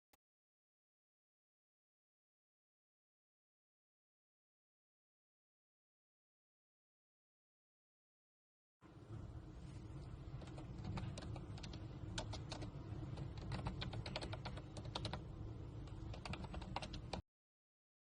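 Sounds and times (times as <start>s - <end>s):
steady low hum: 8.8s - 17.2s.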